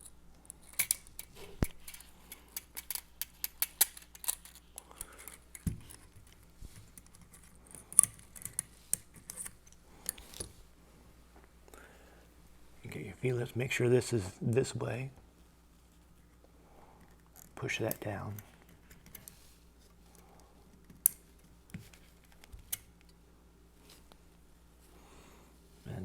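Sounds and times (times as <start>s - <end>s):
small metal parts clicking: 0.0s - 10.5s.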